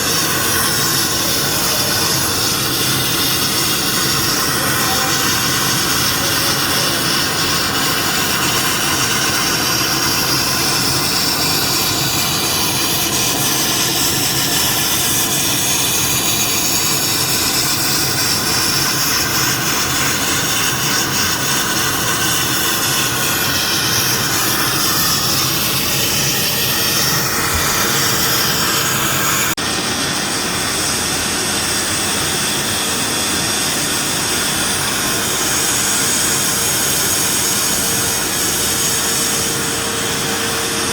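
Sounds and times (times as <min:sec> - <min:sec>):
sandblasting hiss: 0:00.0 - 0:29.6.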